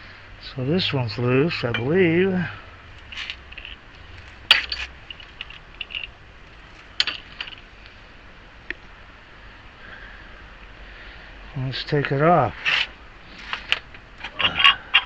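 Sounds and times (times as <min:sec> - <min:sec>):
metal tools clinking on wheel nut: 0:04.5 - 0:06.2, 0:07.0 - 0:07.6.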